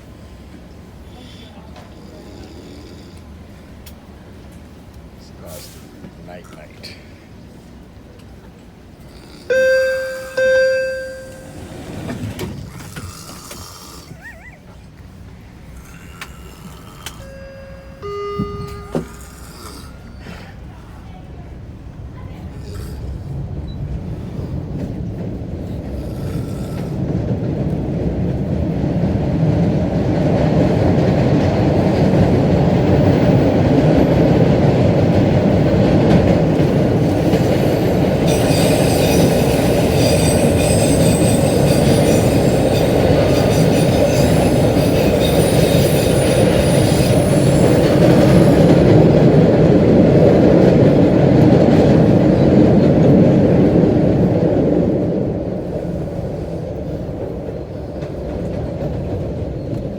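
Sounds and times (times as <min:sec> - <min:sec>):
subway train rumble and rattle: 0:00.0 - 0:59.9
metal wheels squealing on rails: 0:16.1 - 0:21.0, 0:36.7 - 0:49.2.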